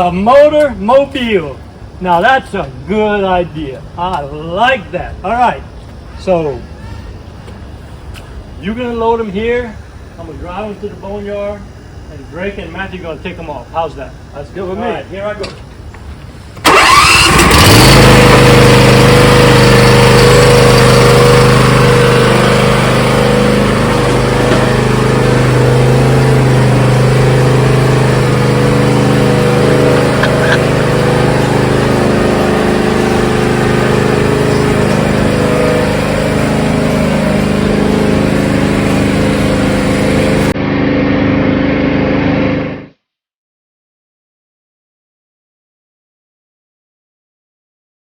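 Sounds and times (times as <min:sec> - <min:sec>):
riding mower engine running: 0:16.6 - 0:42.9.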